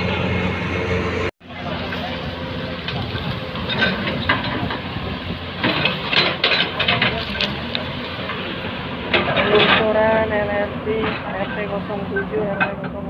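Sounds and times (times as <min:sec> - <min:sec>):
engine running: 0:00.0 - 0:13.0.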